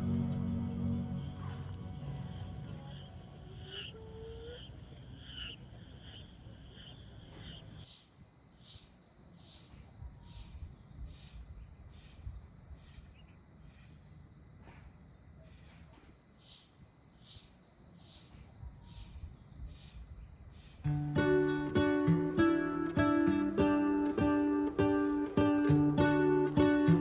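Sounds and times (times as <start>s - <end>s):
crickets chirping: 0.0s - 27.0s
high-pitched insect trill: 18.1s - 27.0s.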